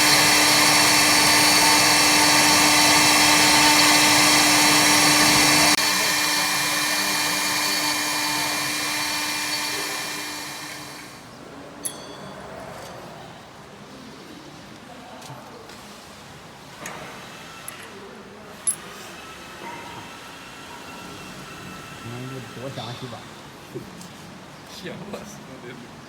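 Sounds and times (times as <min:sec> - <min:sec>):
lathe machinery whining: 0:00.0 - 0:11.4, 0:19.2 - 0:23.3.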